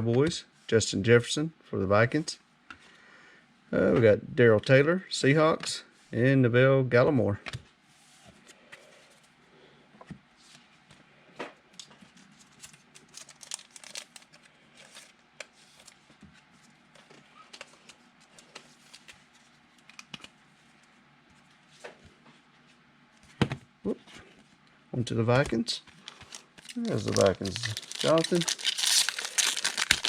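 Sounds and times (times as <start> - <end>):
cards rustling: 12.0 - 16.0, 25.4 - 30.0.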